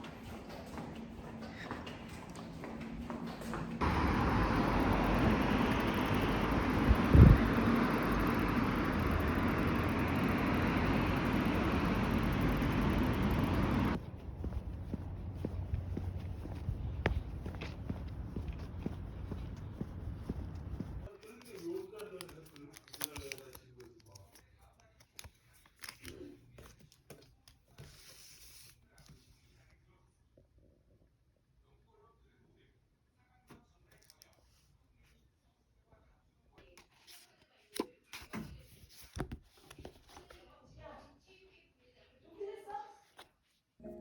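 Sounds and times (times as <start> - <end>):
steady rushing noise: 3.8 - 21.1
soft rustle: 13.7 - 21.7.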